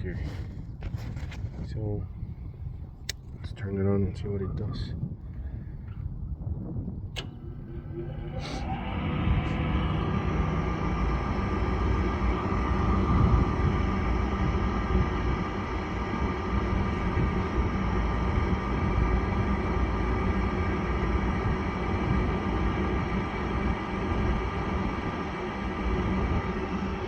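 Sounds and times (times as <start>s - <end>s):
low rumble: 4.0s - 27.0s
furnace inducer motor whirring: 5.7s - 27.0s.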